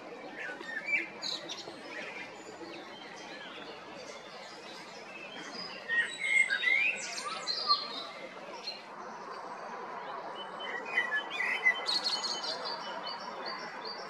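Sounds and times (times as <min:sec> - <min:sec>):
blackbird singing: 0:02.9 - 0:08.8.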